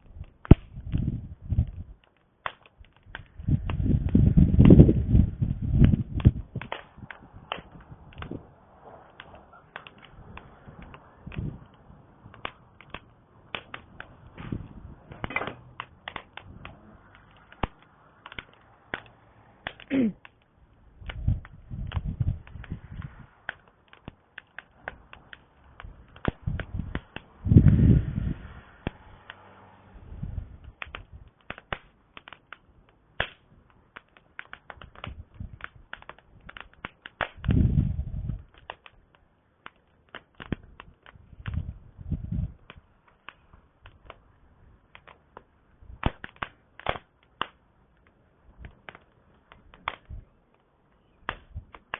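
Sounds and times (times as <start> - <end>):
campfire crackling and popping: 0.0 - 51.9
low rumble: 25.7 - 31.3.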